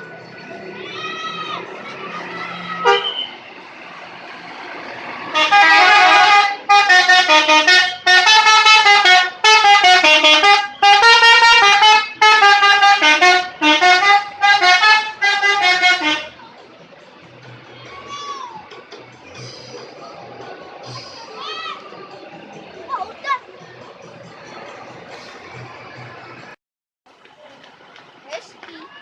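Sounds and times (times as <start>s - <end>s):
bus horn playing melody: 2.8s - 3.3s, 5.3s - 16.4s.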